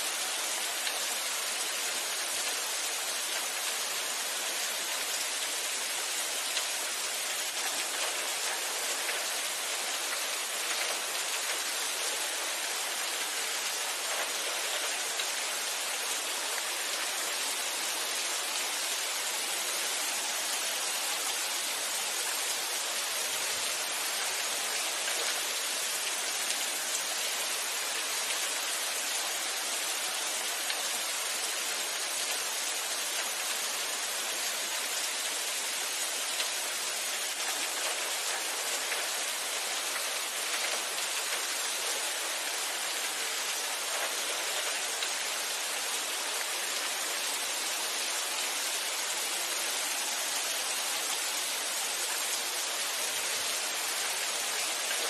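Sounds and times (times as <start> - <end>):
steady rain hiss: 0.0 - 55.0.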